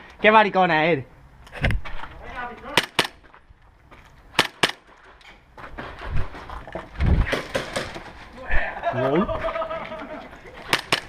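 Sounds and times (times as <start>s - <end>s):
airsoft gun shots: 2.7s - 3.2s, 4.4s - 4.8s, 10.7s - 11.0s.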